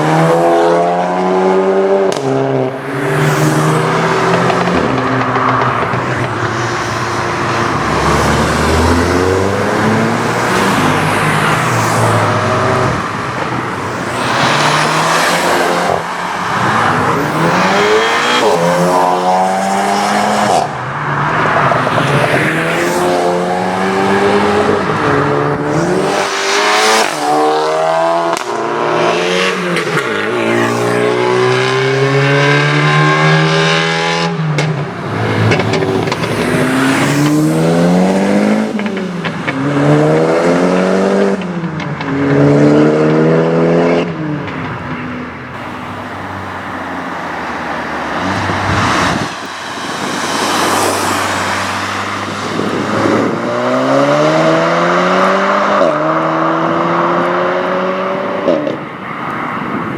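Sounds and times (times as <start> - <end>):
car engines accelerating hard: 0.0 - 59.9
exhaust cracks: 34.6 - 39.6.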